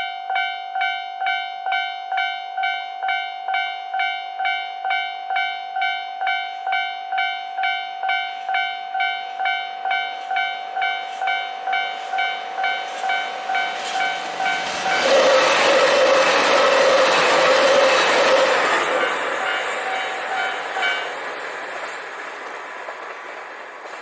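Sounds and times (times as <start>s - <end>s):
level-crossing warning bell ringing: 0.0s - 21.4s
diesel train rushing past: 8.9s - 24.0s.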